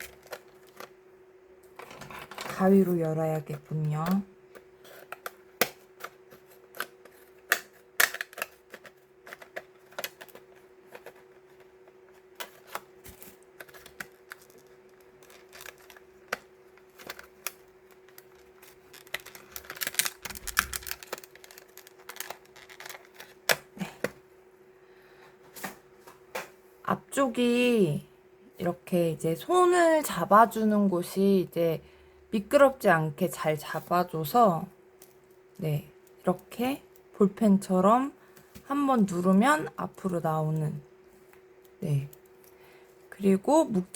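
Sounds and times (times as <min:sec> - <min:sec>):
scissors snipping plastic: 0:12.4 - 0:24.1.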